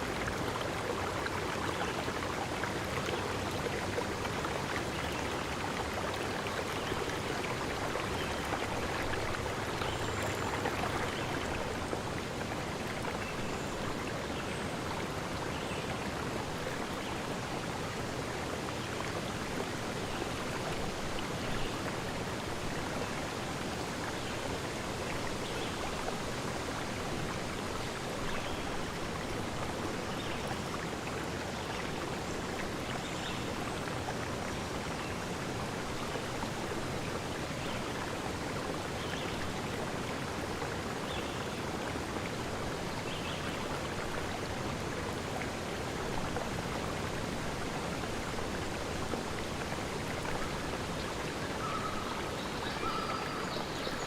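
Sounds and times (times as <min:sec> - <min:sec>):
stream of running water: 0:00.0 - 0:54.0.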